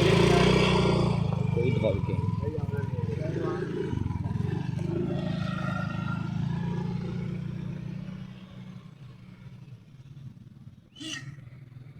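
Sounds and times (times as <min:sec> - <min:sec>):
heavy diesel engine running: 0:00.0 - 0:04.9.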